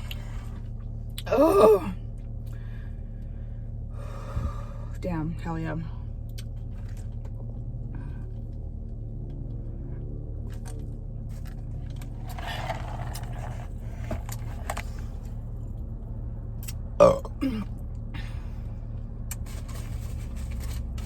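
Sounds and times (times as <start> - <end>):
car air conditioning hum: 0.0 - 6.6.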